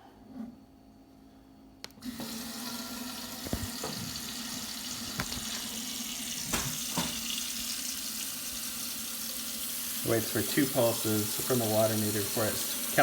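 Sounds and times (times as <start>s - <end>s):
tap water running: 2.0s - 13.0s.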